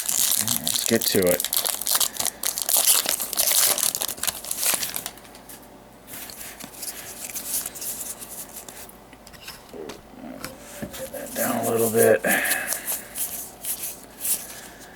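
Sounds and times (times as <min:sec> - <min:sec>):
foil wrapper crinkling: 0:00.0 - 0:05.6.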